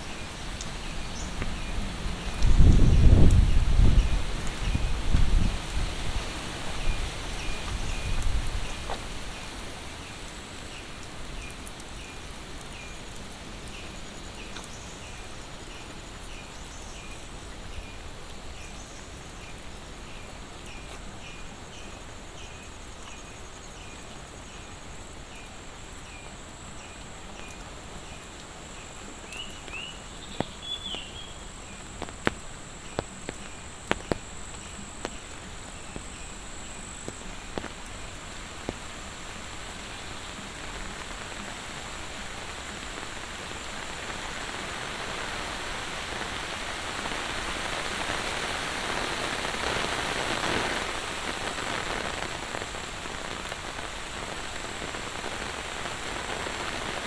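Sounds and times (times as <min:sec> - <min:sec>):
rain falling steadily: 0:00.0 - 0:57.0
high insect drone: 0:27.8 - 0:57.0.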